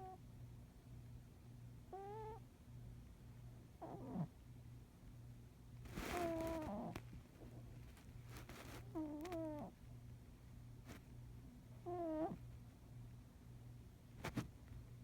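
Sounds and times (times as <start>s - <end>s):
cat snoring: 11.8s - 12.4s.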